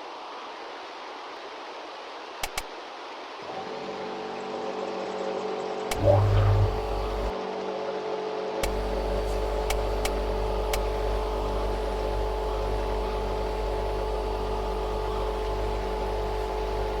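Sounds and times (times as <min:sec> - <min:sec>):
droning electrical hum: 0:05.9 - 0:07.3, 0:08.6 - 0:17.0
low throb pulsing: 0:05.9 - 0:07.3.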